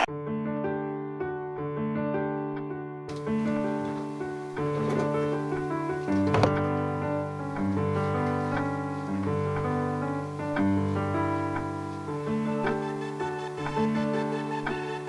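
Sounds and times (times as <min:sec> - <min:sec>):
gentle piano piece: 0:00.0 - 0:15.0.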